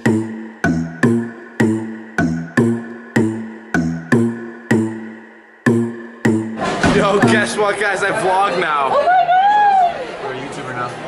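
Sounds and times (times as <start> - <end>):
keyboard playing repeated chords: 0.0 - 8.0.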